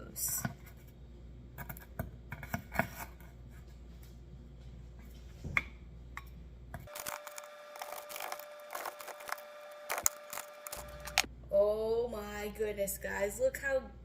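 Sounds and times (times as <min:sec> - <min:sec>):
steady higher hum: 0:05.8 - 0:12.8.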